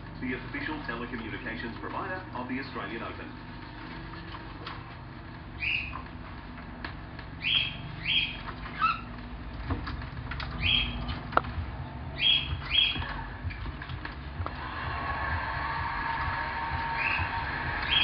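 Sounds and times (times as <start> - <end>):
low background hum: 0.0 - 18.0
parakeet chirping: 5.5 - 6.1, 7.4 - 9.2, 10.5 - 13.6, 16.9 - 18.0.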